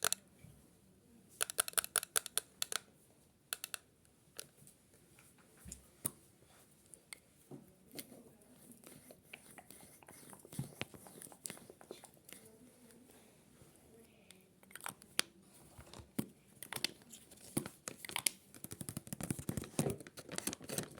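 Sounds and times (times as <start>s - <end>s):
faint clicks and taps: 3.5s - 3.8s, 6.8s - 13.1s, 14.0s - 20.9s.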